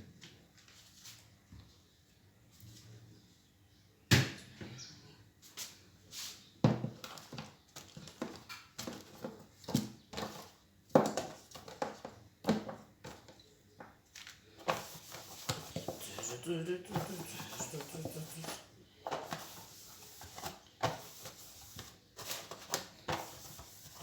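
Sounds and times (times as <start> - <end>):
food containers knocking and clattering: 6.6 - 14.0.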